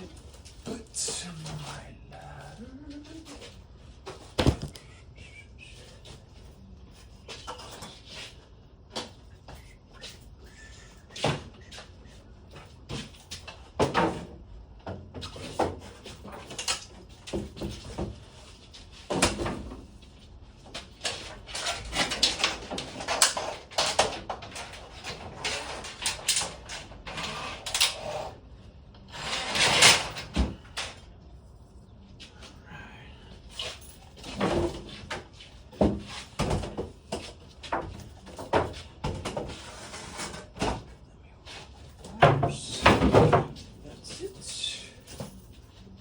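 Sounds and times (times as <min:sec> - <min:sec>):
garage door hardware clanking: 0:29.2 - 0:31.0.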